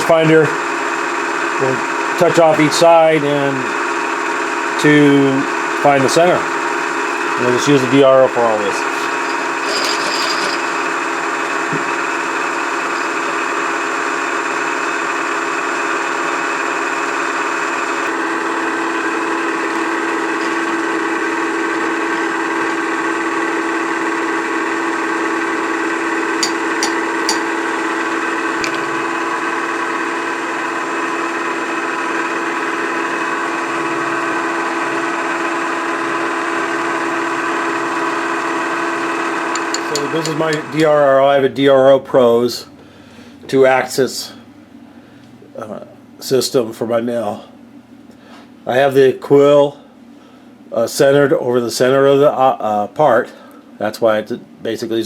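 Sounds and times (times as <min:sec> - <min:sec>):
milling machine motor hum and whine: 0:00.0 - 0:41.2.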